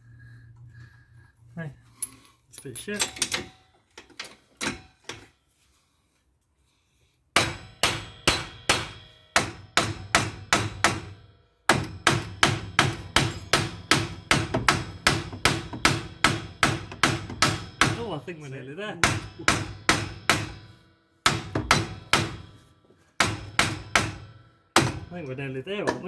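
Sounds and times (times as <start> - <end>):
hammer striking metal: 7.4 - 18.2, 19.0 - 22.6, 23.2 - 25.3.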